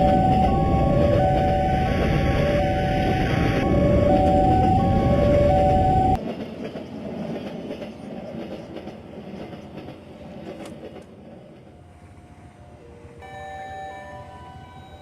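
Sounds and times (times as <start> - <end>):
crossing warning siren: 0.0 - 6.2, 11.7 - 15.0
train rumble: 0.0 - 15.0.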